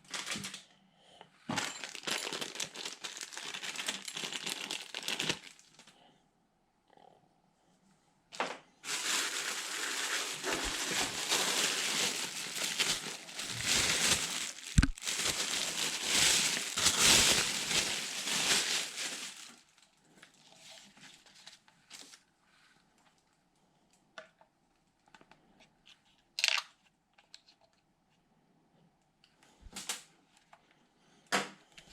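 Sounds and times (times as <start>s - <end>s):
packaging crinkling and rustling: 0.0s - 0.6s, 1.5s - 5.9s, 8.4s - 22.2s.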